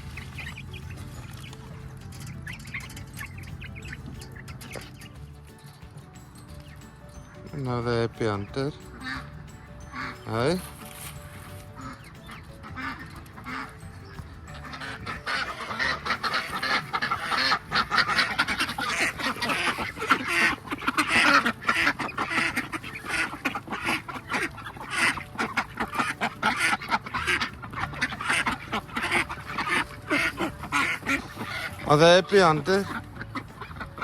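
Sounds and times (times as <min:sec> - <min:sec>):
flock of fowl calling: 0:09.0 - 0:09.2, 0:09.9 - 0:34.0.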